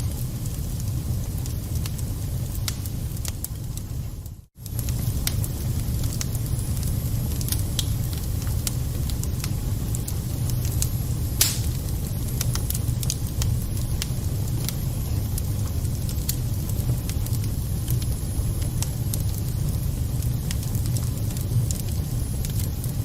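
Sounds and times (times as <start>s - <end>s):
wood fire crackling: 0.0s - 23.0s
fire pop: 11.3s - 13.2s.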